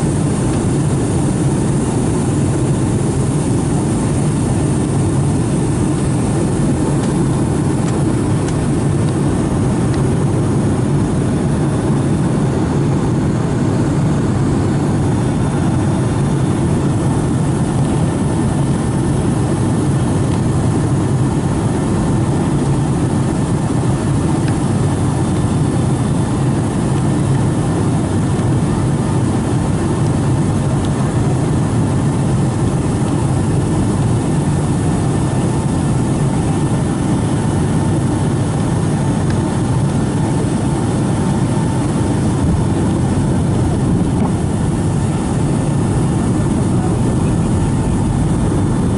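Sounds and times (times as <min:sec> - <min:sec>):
jet engines droning: 0:00.0 - 0:48.9
air rushing past fuselage: 0:41.6 - 0:48.9.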